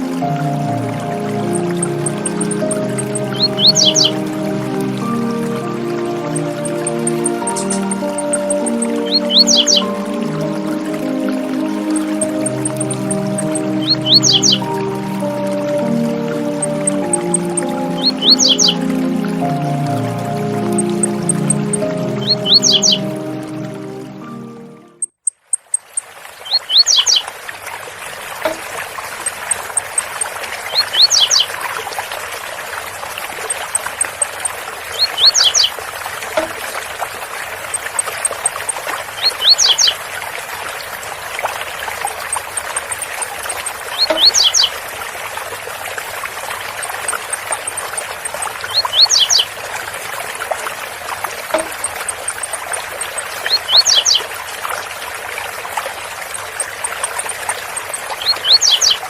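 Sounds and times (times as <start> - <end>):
waterfall rushing: 0.0 - 25.0
bird singing high rising notes: 0.0 - 25.3, 35.0 - 35.7, 44.0 - 44.7, 48.7 - 49.5, 53.5 - 54.2, 57.1 - 59.0
faint rapid high ticks: 1.4 - 4.3, 6.2 - 9.9, 11.8 - 14.8, 16.5 - 18.9, 25.0 - 27.2, 28.4 - 31.5, 33.4 - 35.8, 37.7 - 40.0, 42.0 - 44.8, 46.8 - 49.5, 51.5 - 54.3, 56.3 - 59.0.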